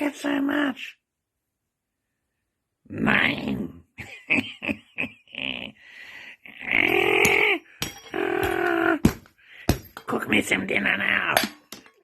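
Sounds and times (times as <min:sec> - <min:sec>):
person making grunting sounds: 0:06.4 - 0:09.1.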